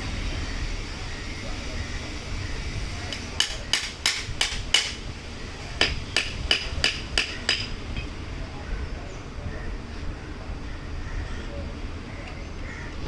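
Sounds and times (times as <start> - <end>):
hammer striking metal: 3.1 - 5.0, 5.8 - 7.8.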